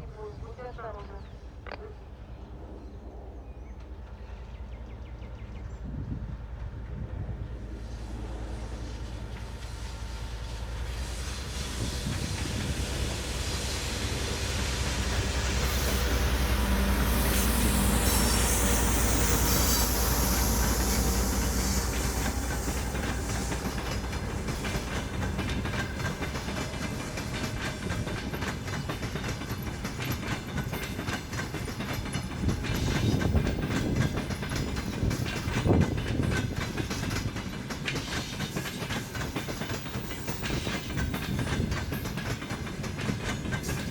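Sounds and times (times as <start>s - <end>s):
diesel locomotive engine drone: 0.0s - 43.9s
train carriages clattering over rails: 9.2s - 43.9s.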